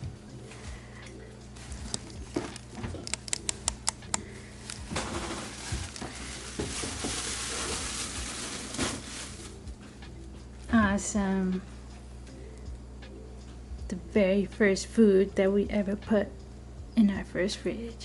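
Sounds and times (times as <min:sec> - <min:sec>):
rustling: 0:04.6 - 0:09.6.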